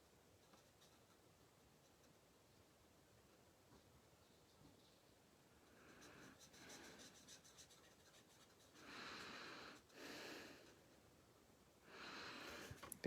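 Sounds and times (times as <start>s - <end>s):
marker scratching on cardstock: 0.4s - 2.2s, 5.9s - 8.9s.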